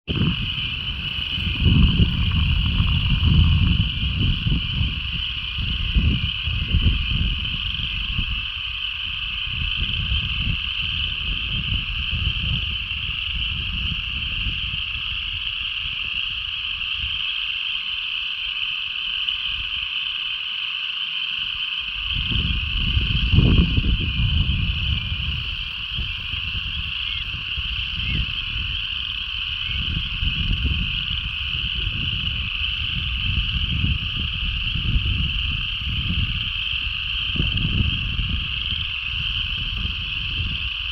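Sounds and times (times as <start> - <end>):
low rumble: 0.1 - 8.2
frogs calling: 0.1 - 40.9.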